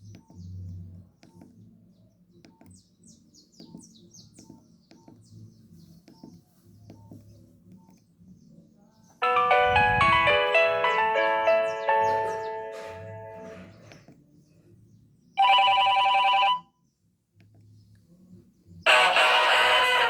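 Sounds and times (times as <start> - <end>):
polyphonic phone ringtone: 9.2 - 13.4, 15.4 - 16.7.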